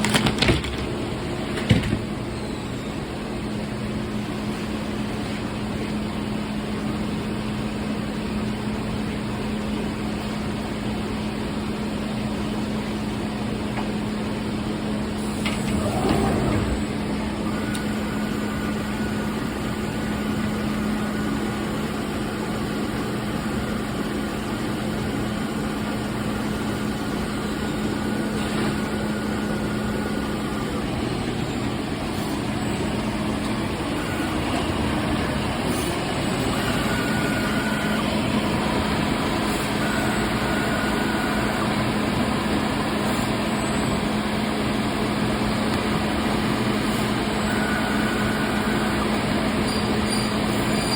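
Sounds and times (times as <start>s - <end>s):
cnc router running: 15.2s - 50.9s.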